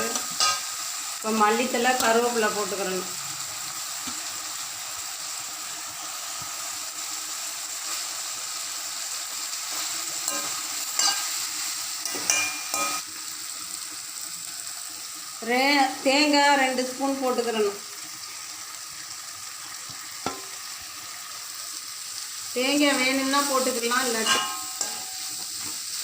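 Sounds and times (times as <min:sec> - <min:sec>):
vegetables sizzling in oil: 0:00.0 - 0:26.0
utensil scraping pan: 0:23.9 - 0:25.9.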